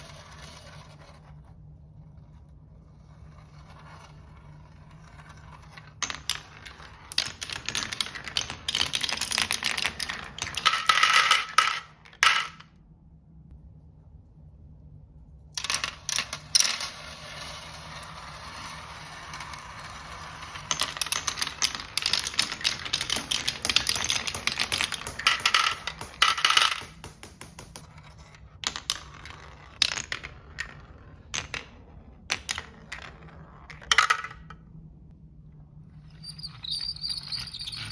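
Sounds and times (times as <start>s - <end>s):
marbles clattering down wooden run: 6.0s - 12.6s, 15.6s - 27.9s, 28.6s - 31.7s, 36.2s - 37.9s.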